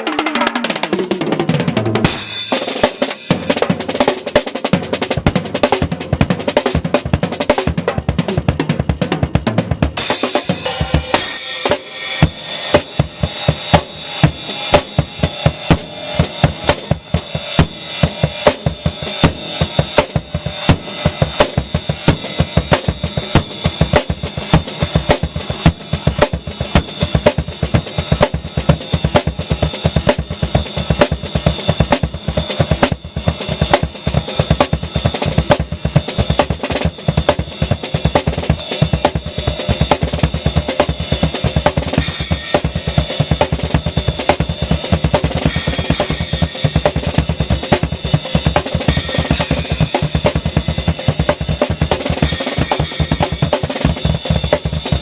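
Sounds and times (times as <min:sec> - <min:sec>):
drum kit solo: 0:00.0 - 0:55.0.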